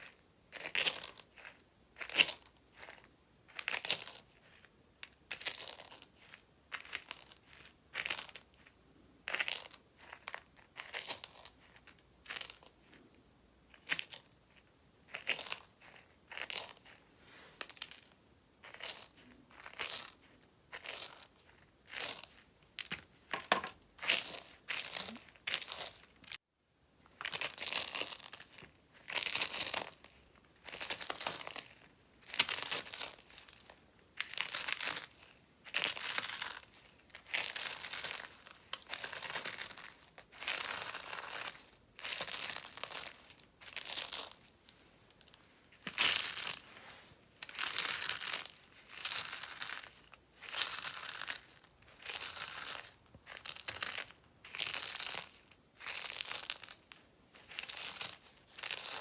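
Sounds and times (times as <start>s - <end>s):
dry soap crunching: 13.7s - 17.0s, 17.6s - 26.4s, 27.1s - 59.0s.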